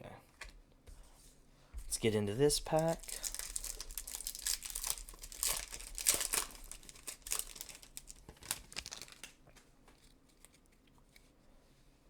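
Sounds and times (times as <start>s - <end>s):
wrapper tearing and crinkling: 2.8s - 9.6s.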